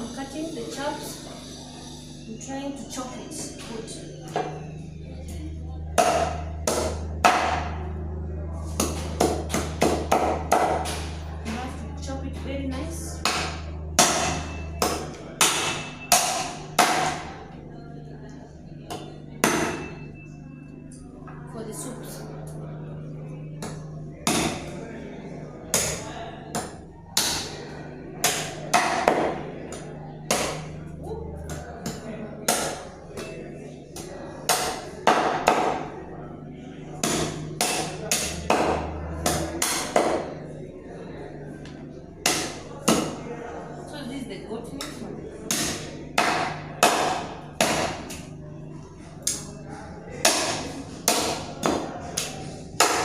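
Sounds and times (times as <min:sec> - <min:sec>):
meat chopping on a board: 0:06.0 - 0:07.7, 0:08.7 - 0:11.2, 0:13.2 - 0:17.3, 0:18.9 - 0:19.9, 0:23.6 - 0:24.7, 0:25.7 - 0:27.6, 0:28.2 - 0:30.7, 0:31.5 - 0:33.3, 0:34.0 - 0:35.8, 0:37.0 - 0:40.3, 0:42.2 - 0:43.2, 0:45.5 - 0:48.2, 0:50.2 - 0:53.0.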